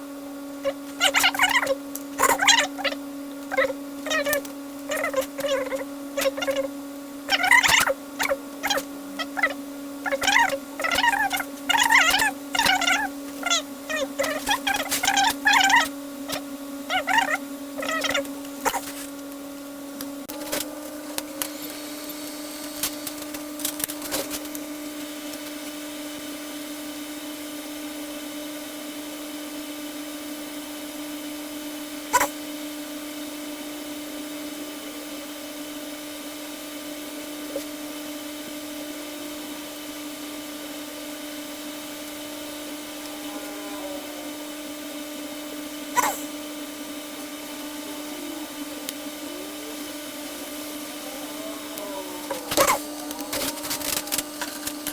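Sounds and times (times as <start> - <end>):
small electric fan humming: 0.0 - 54.9.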